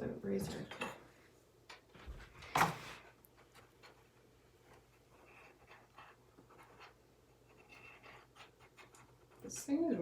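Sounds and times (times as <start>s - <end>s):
faint scratches and clicks: 3.0s - 9.8s.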